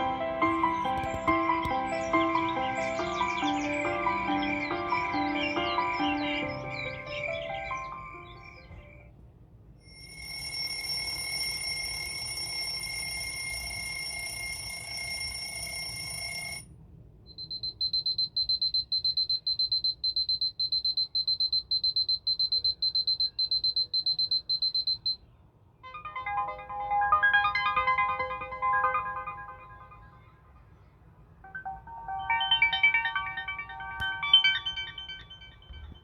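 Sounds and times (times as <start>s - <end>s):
high electronic ringing tone: 0.0s - 8.9s, 9.9s - 16.6s, 25.8s - 30.6s, 31.5s - 36.0s
melodic chime tune: 0.0s - 9.0s, 25.9s - 30.6s, 31.5s - 36.0s
fast high-pitched beeps: 17.3s - 25.2s, 31.5s - 36.0s.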